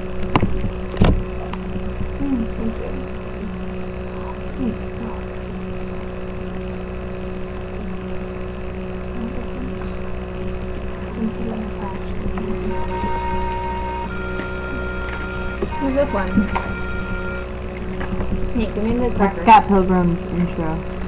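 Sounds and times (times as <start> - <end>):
constant rumble: 0.0 - 21.0
distant voices: 0.0 - 21.0
steady low hum: 0.0 - 21.0.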